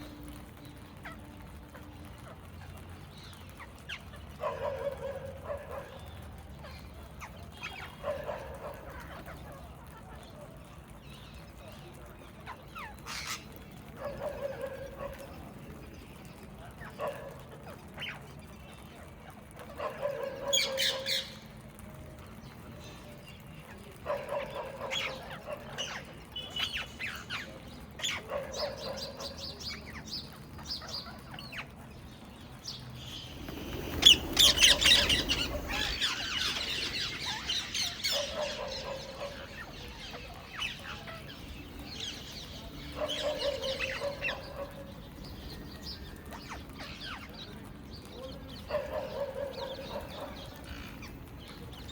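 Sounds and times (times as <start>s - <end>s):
parrots screeching: 33.0s - 42.4s
parrots chattering: 33.0s - 44.8s.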